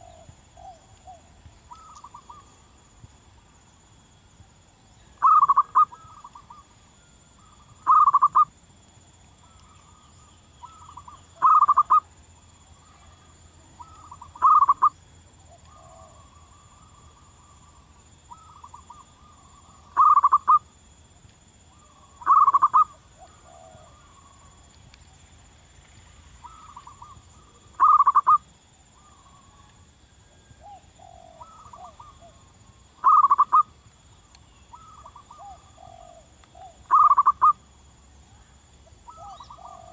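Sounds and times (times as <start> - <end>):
dove cooing: 5.2 - 6.6, 7.8 - 8.5, 10.6 - 12.0, 13.8 - 14.9, 18.3 - 20.6, 21.8 - 24.3, 26.4 - 28.4, 30.3 - 32.4, 33.0 - 33.7, 34.7 - 37.6, 39.1 - 39.9.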